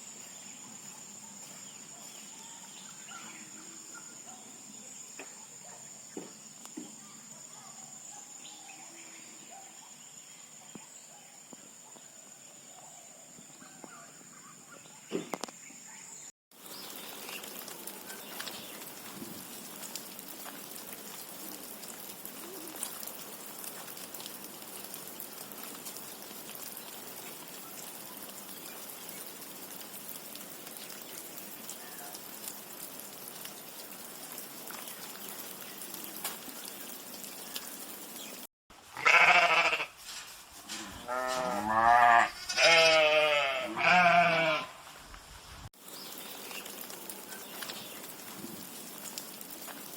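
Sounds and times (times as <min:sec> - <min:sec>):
faint steady hiss: 0:08.4 - 0:39.0, 0:44.4 - 0:49.9
sheep bleating: 0:39.0 - 0:40.0, 0:41.0 - 0:44.8.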